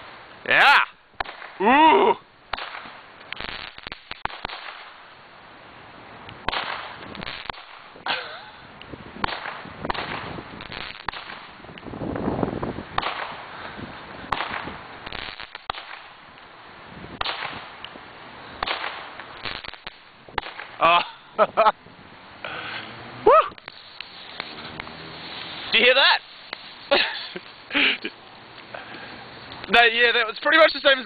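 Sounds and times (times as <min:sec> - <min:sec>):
firework cracks and pops: 0:01.1 - 0:05.4, 0:06.2 - 0:21.7, 0:23.3 - 0:31.0
firework hissing burst: 0:02.5 - 0:05.2, 0:06.4 - 0:08.1, 0:09.2 - 0:16.3, 0:16.9 - 0:20.8, 0:22.4 - 0:29.6.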